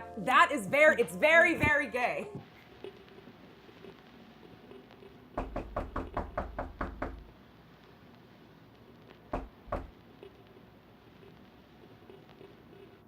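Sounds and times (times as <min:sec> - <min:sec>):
knocking on a door: 0:05.4 - 0:07.3, 0:09.3 - 0:09.9.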